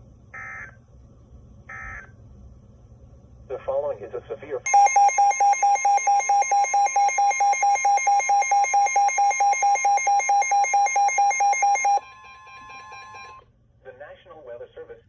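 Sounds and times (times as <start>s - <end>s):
pulsing alarm beeps: 4.7s - 12.0s
steady warning tone: 4.7s - 12.0s.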